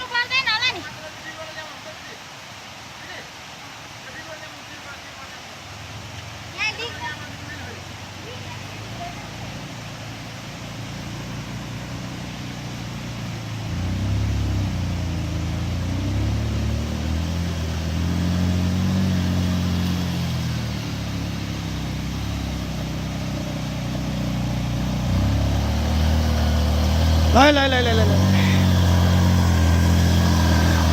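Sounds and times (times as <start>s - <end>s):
vehicle engine running under load: 6.4s - 30.9s.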